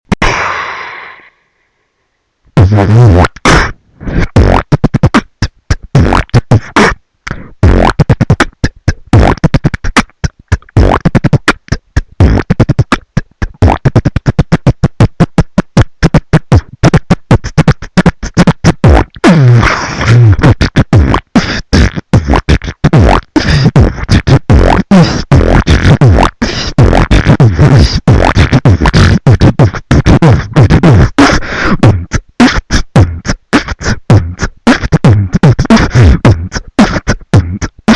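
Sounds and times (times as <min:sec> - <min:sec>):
person beatboxing: 0:02.6 - 0:37.9
hummed bass: 0:07.6 - 0:31.2.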